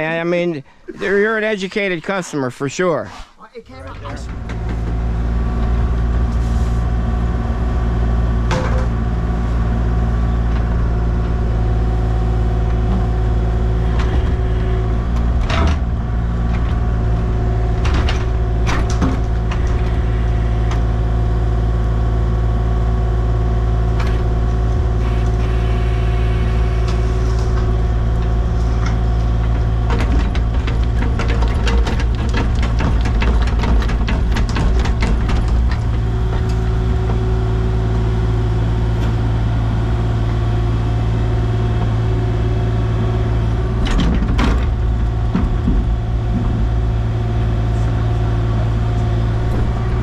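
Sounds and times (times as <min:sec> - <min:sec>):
heavy engine running: 0:03.8 - 0:50.0
sharp knocks and clanks: 0:08.4 - 0:09.1, 0:13.8 - 0:20.9, 0:26.5 - 0:38.1, 0:43.5 - 0:47.4.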